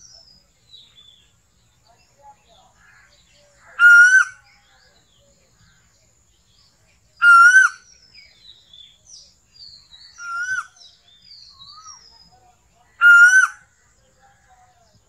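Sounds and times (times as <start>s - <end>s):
koel calling: 3.8s - 4.4s, 13.0s - 13.6s.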